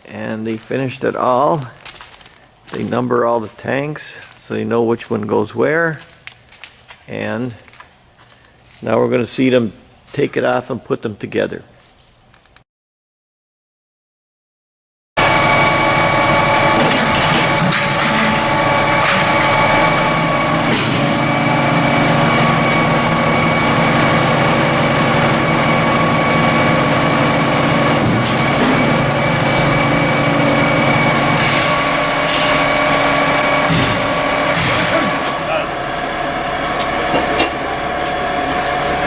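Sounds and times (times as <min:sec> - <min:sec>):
heavy machinery whining and rumbling: 0:15.2 - 0:39.0.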